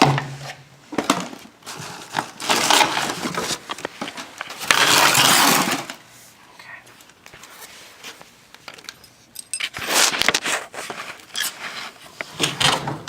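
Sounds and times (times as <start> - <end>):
tools and parts clicking: 8.6 - 9.9.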